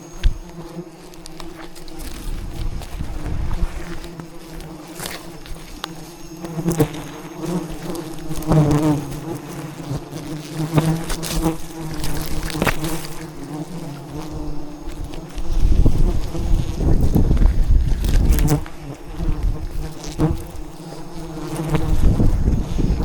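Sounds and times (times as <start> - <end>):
bees buzzing: 0.0 - 23.0.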